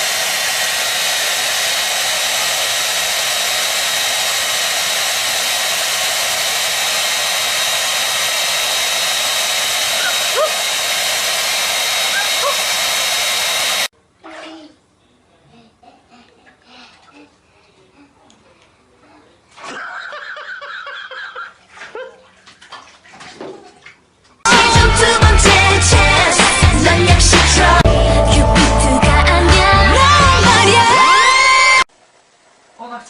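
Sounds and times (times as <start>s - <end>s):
hair dryer blowing: 0.0s - 13.9s, 24.5s - 28.2s, 29.7s - 31.9s.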